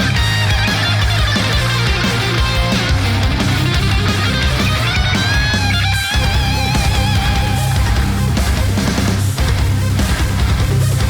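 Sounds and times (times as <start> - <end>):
bass: 0.0 - 11.0
distorted electric guitars chugging: 0.0 - 11.0
drums with crashing cymbals: 0.0 - 11.0.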